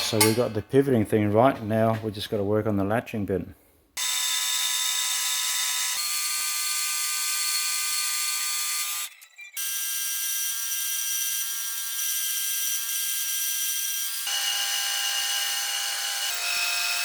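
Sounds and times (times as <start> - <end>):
power tool whining: 4.0 - 17.0.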